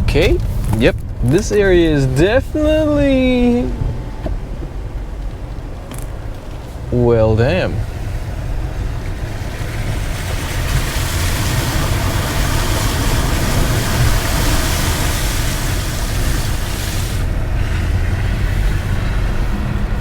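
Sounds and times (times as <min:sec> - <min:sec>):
car rumbling: 0:00.0 - 0:20.0
water spray hissing from tyres: 0:07.8 - 0:20.0.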